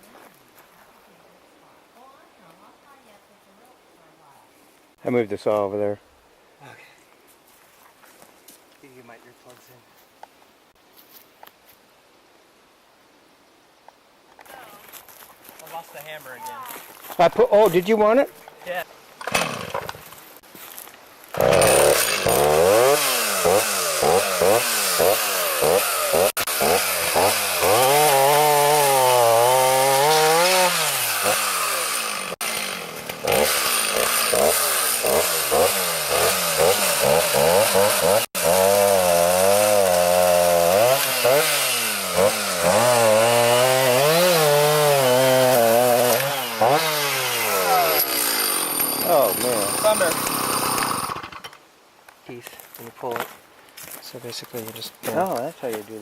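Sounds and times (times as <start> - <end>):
chainsaw engine cutting: 19.2 - 20.0, 21.3 - 51.5.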